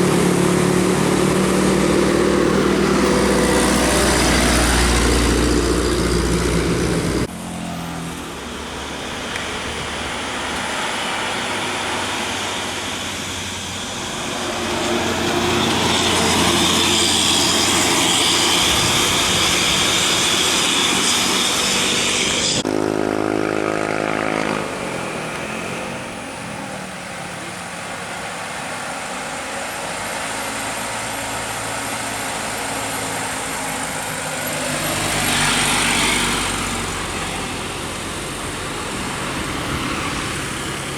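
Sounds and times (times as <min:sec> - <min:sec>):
buses driving past: 0:00.0 - 0:40.9
loud rushing noise: 0:08.3 - 0:26.8.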